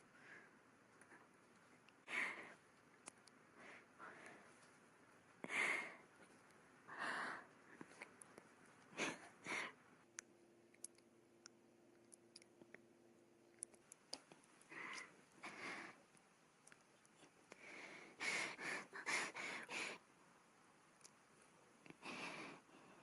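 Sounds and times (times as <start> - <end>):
woman breathing sharply: 17.6 - 20.0.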